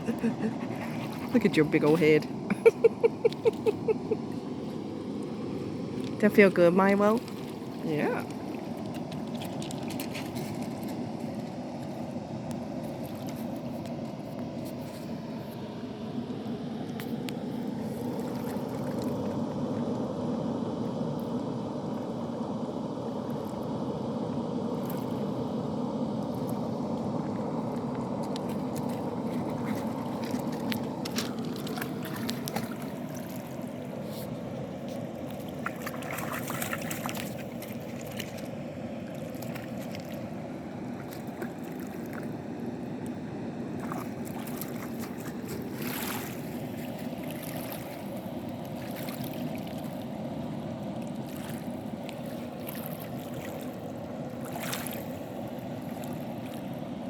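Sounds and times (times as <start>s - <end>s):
sharp water splashes: 28.4s - 34.3s, 35.2s - 40.4s, 43.8s - 50.0s, 51.2s - 55.2s.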